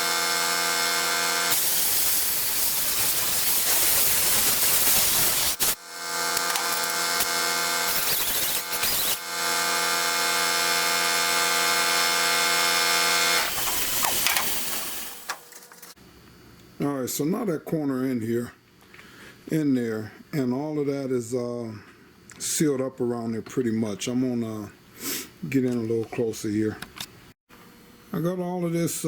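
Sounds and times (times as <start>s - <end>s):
power tool motor whine: 0.0s - 16.0s
harsh grinding on sheet metal: 1.4s - 9.9s.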